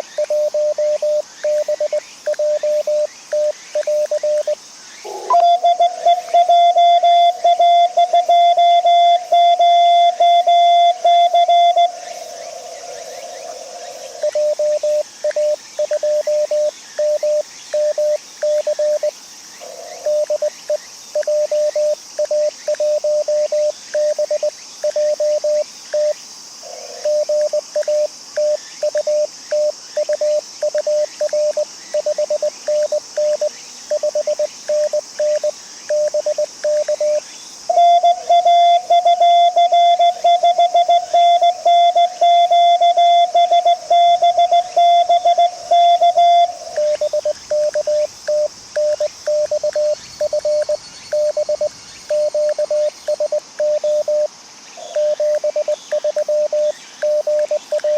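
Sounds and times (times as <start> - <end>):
morse code tone: 0.0 - 4.6, 5.3 - 12.0, 14.2 - 19.1, 27.1 - 54.3, 55.0 - 57.9
receiver hiss: 0.0 - 57.9.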